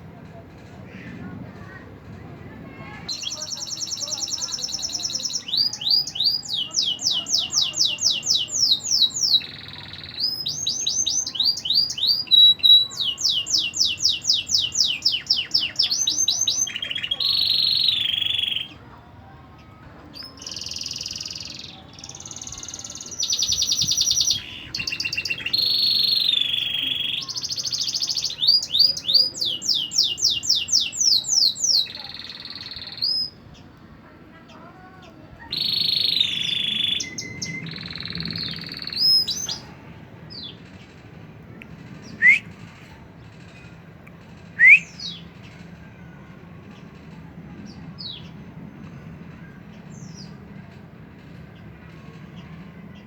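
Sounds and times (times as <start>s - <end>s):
canary singing: 3.1s - 18.8s, 20.2s - 33.4s, 35.4s - 39.7s, 42.0s - 42.6s.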